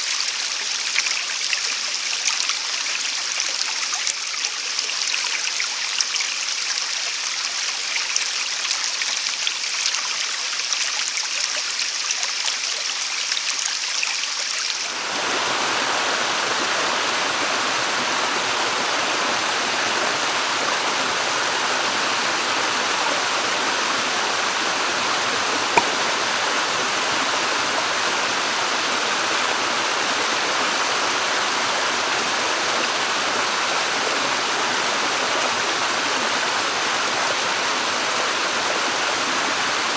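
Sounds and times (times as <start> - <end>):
stream flowing over rocks: 0.0 - 17.1.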